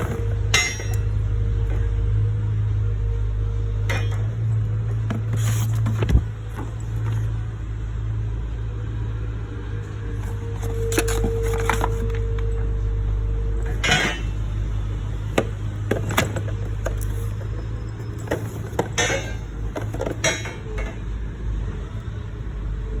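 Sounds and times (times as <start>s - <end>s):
metal springs clinking: 0.0s - 1.9s, 3.8s - 7.4s, 13.6s - 21.0s
scraping rustles: 0.0s - 2.0s, 3.9s - 7.6s, 10.1s - 12.5s, 13.6s - 21.0s.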